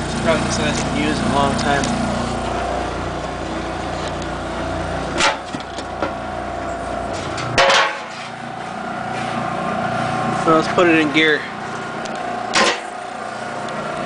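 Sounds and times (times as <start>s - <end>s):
electric motor humming: 0.0s - 7.5s, 8.2s - 14.0s
loud clunks: 5.1s - 6.2s, 7.1s - 8.2s, 12.5s - 12.9s.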